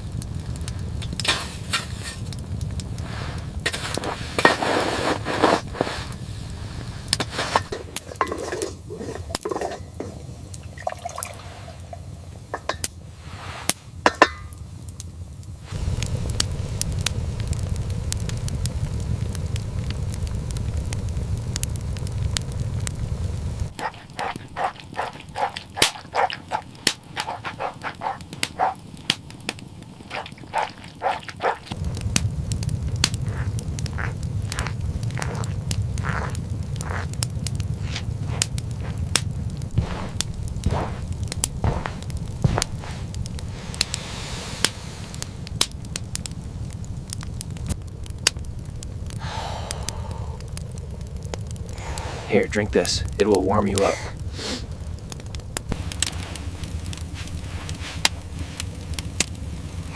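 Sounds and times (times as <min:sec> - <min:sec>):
low rumble with crackles: 0:00.0 - 0:59.9
liquid sounds: 0:00.6 - 0:14.5, 0:23.7 - 0:32.3, 0:32.9 - 0:45.7
dishes clinking and knocking: 0:07.5 - 0:10.2.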